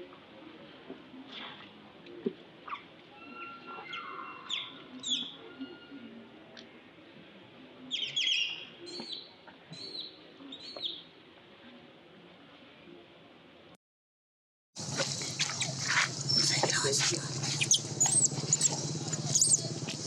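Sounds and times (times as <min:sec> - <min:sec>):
small animal chirping calls: 0:15.1 - 0:20.0.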